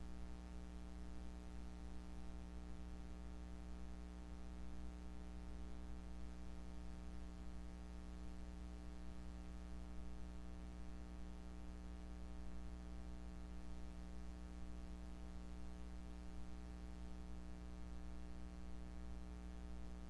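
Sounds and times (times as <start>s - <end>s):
low electrical hum: 0.0s - 20.0s.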